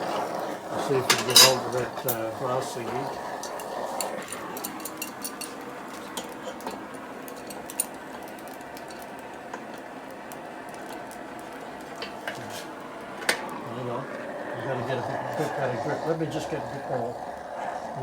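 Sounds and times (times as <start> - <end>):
gas torch flame hissing: 0.0 - 18.0
tools tapping on metal: 3.4 - 9.6.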